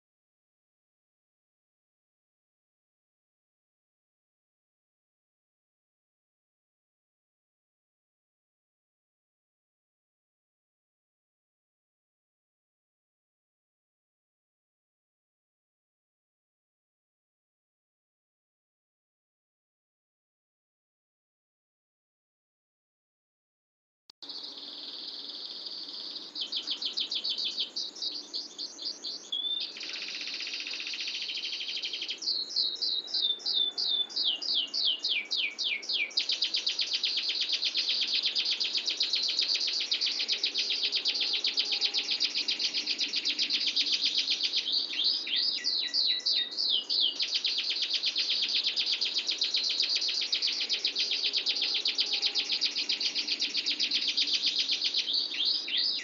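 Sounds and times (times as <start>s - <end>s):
canary singing trills: 24.2s - 56.0s.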